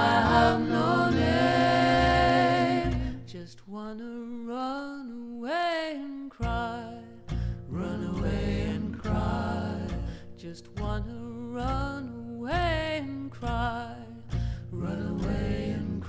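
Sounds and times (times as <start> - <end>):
slow gentle music: 0.0 - 3.4.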